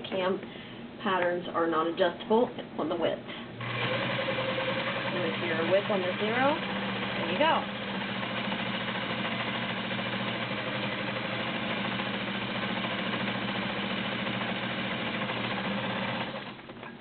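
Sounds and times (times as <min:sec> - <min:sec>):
sewing machine motor running: 0:03.6 - 0:16.9.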